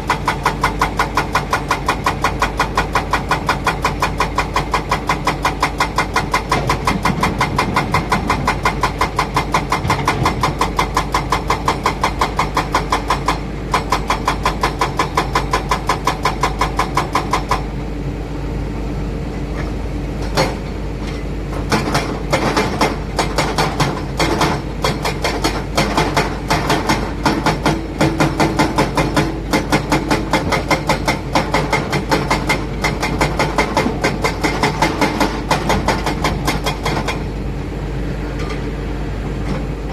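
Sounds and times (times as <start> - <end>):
diesel engine hum: 37.1 - 39.9.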